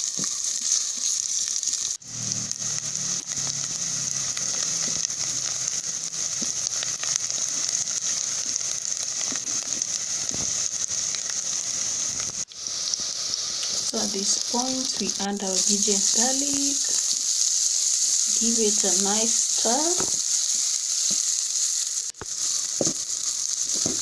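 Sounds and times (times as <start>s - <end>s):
onions sizzling in hot oil: 0.0s - 24.0s.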